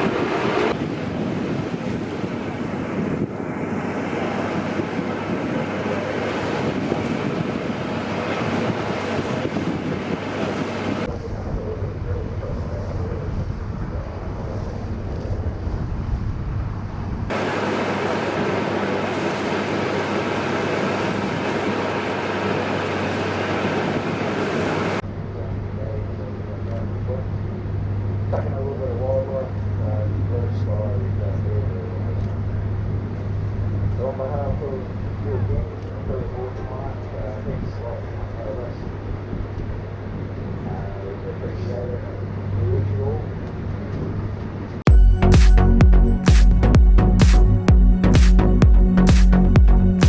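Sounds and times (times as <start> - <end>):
boat engines droning: 0.0 - 13.4, 17.0 - 50.0
wind on microphone: 0.0 - 25.7, 32.4 - 44.8
water noise: 0.0 - 31.2.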